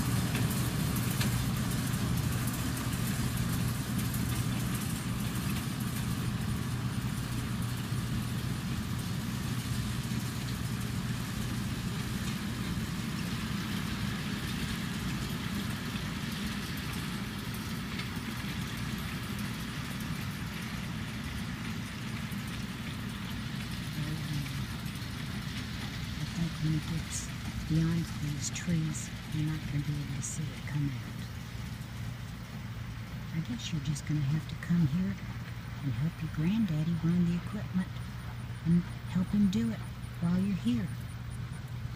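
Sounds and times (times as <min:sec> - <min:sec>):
engine running steadily: 0:00.0 - 0:41.9.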